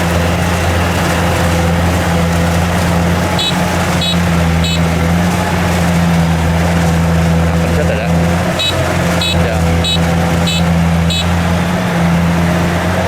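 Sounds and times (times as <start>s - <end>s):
diesel engine running: 0.0s - 13.0s
short high chirps: 3.4s - 5.0s, 8.6s - 11.4s.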